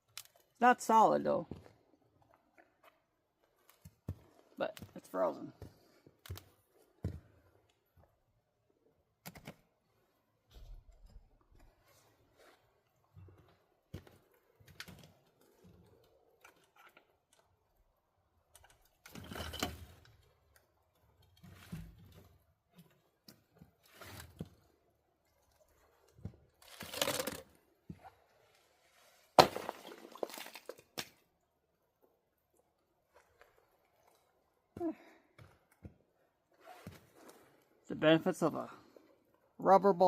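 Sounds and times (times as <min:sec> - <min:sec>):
ice cracking: 0:26.6 - 0:27.6, 0:29.4 - 0:31.3.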